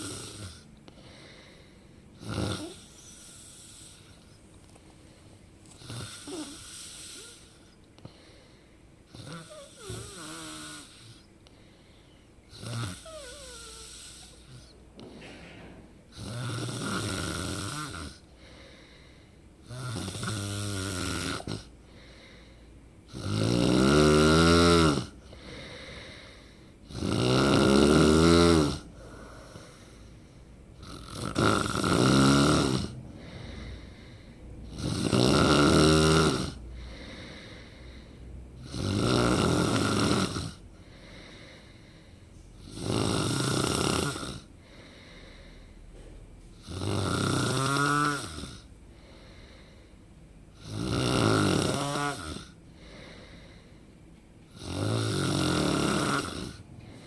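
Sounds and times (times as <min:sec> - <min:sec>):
person snoring loudly: 0:00.0 - 0:00.6, 0:02.2 - 0:04.2, 0:05.8 - 0:07.6, 0:09.1 - 0:11.2, 0:12.5 - 0:14.8, 0:16.1 - 0:18.2, 0:19.6 - 0:21.7, 0:23.1 - 0:29.7, 0:30.8 - 0:33.9, 0:34.6 - 0:37.6, 0:38.6 - 0:40.6, 0:42.6 - 0:44.5, 0:46.6 - 0:48.7, 0:50.6 - 0:53.1, 0:54.6 - 0:56.6.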